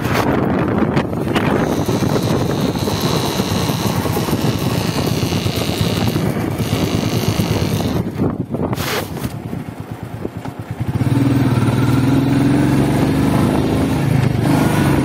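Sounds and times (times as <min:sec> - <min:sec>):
motorcycle engine running: 0:00.0 - 0:15.0
road rumble: 0:00.0 - 0:15.0
high-pitched whirring: 0:01.2 - 0:08.2.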